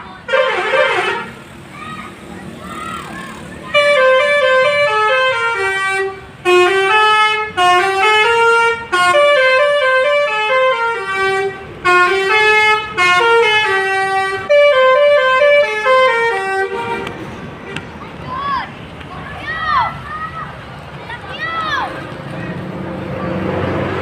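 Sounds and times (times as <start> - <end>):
bus horn playing a tune: 0.2 - 1.5, 3.7 - 17.8.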